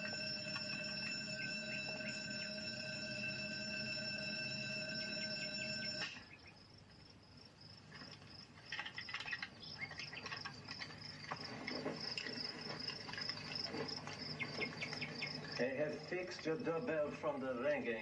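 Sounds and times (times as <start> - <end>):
doorbell ringing: 0.0 - 6.3
crickets chirping: 0.0 - 18.0.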